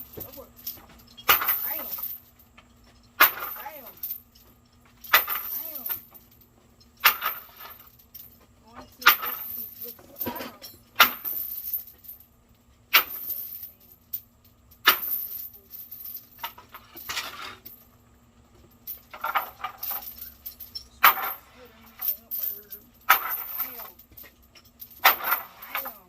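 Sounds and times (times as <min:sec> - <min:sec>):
chain striking wooden boards: 0:00.0 - 0:12.2, 0:12.9 - 0:17.9, 0:18.5 - 0:26.0
chain links jangling: 0:00.0 - 0:26.0.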